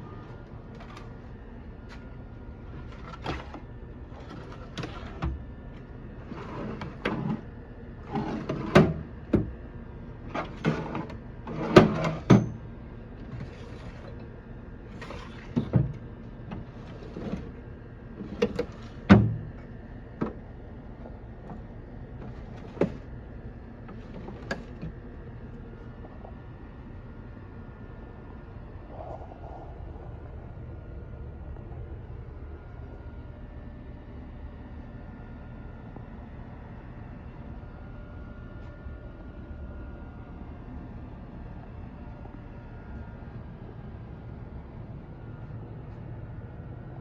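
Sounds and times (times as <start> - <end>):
steel toolbox parts clunking: 10.4 - 12.6, 18.2 - 19.6.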